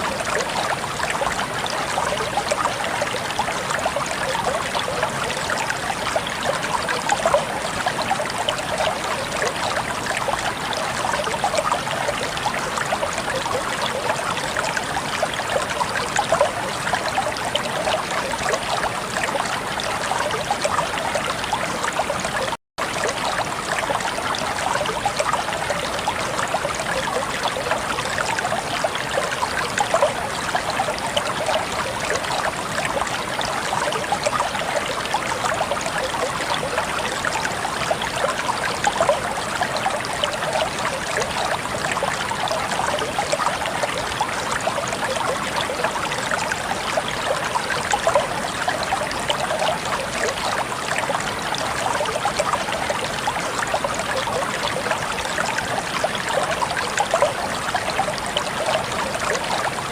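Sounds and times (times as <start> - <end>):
water babbling and splashing: 0.0 - 59.9.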